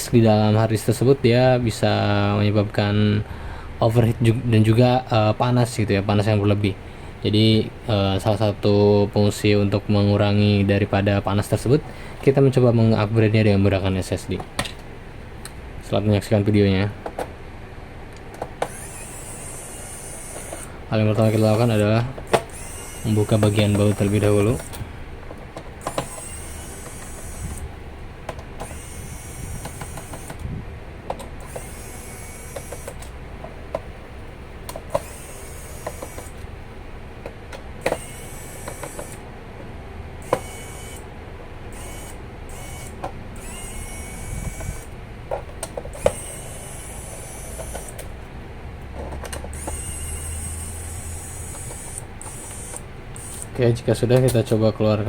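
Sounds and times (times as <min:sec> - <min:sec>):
screwdriver undoing screws: 0:18.3 - 0:24.8, 0:25.4 - 0:27.7, 0:28.3 - 0:30.5, 0:31.1 - 0:33.8, 0:34.7 - 0:36.5, 0:37.8 - 0:39.2, 0:40.2 - 0:41.1, 0:41.7 - 0:48.1, 0:49.2 - 0:53.6.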